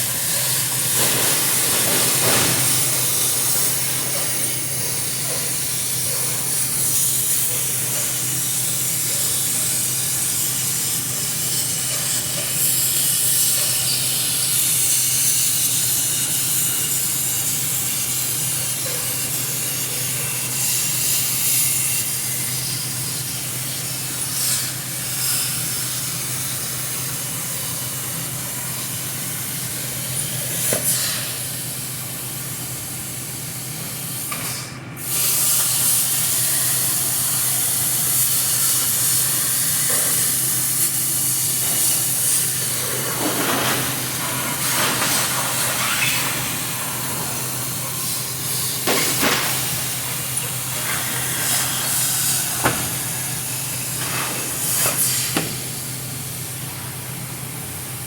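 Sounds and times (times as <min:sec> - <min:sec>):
hissing spray: 0:34.4 - 0:56.2.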